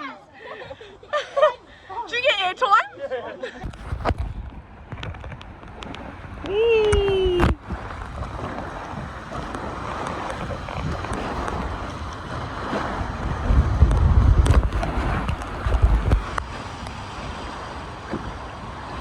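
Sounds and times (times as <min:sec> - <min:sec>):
rushing water: 0:00.0 - 0:19.0
wind buffeting microphone: 0:03.6 - 0:19.0.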